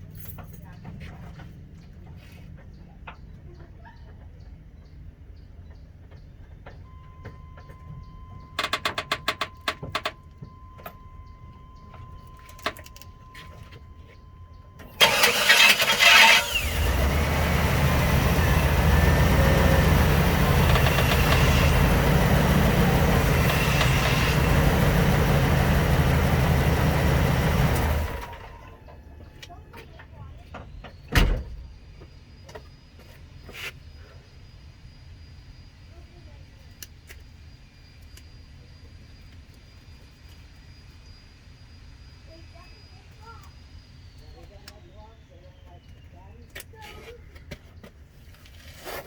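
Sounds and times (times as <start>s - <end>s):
pickup engine idling: 13.1s - 28.8s
starter cranking engine: 14.8s - 28.7s.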